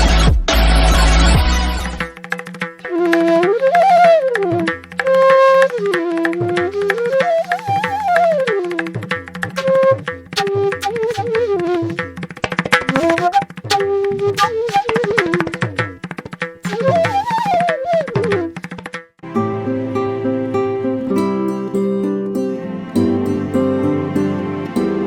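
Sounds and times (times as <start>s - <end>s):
tabla strokes: 2.0s - 19.2s
plucked strings: 2.0s - 25.0s
flute melody: 2.8s - 16.0s, 16.6s - 18.7s, 19.3s - 25.0s.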